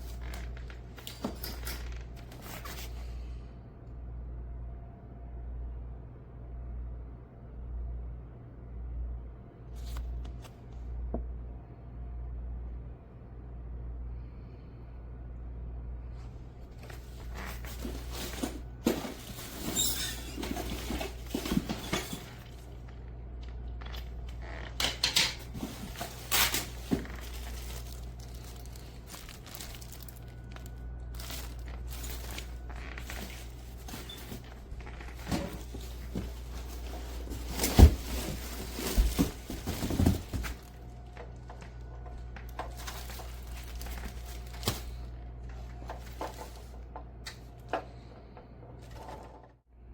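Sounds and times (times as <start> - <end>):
steady low hum: 0.0 - 49.9
handling clunks and knocks: 16.8 - 30.0, 31.2 - 49.5.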